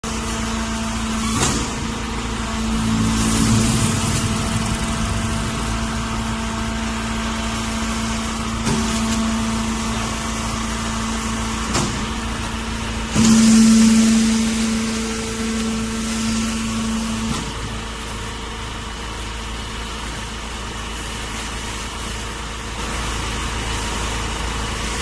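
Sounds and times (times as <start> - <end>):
baling press humming: 1.0 - 8.9.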